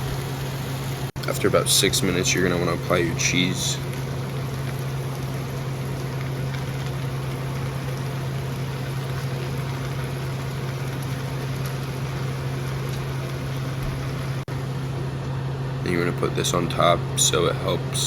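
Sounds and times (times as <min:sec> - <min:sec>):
steak and onions sizzling in pan: 0:00.0 - 0:01.1, 0:03.2 - 0:15.0
constant low hum: 0:00.0 - 0:18.0.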